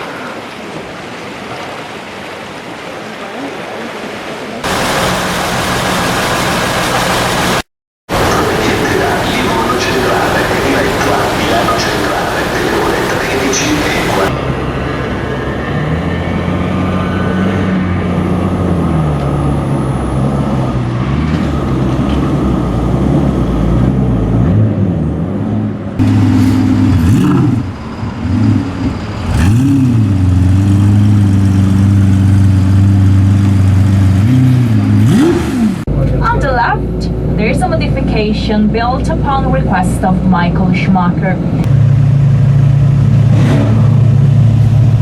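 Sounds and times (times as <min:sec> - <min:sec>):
car engine accelerating hard: 0:04.7 - 0:36.3, 0:41.6 - 0:45.0.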